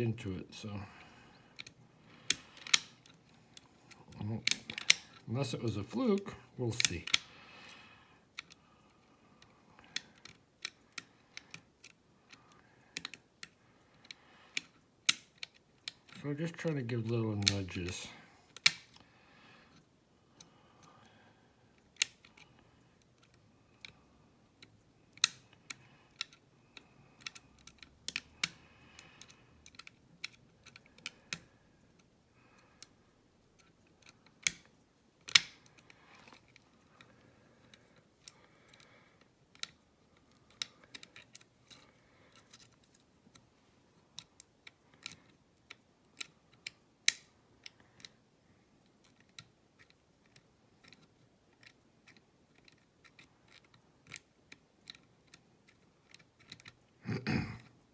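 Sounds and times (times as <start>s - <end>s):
lock picking clicks: 1.6s - 3.3s, 3.9s - 7.3s, 17.3s - 17.9s, 18.5s - 19.0s, 21.8s - 24.0s, 24.6s - 32.1s, 33.6s - 37.1s, 44.2s - 47.4s, 49.0s - 56.8s.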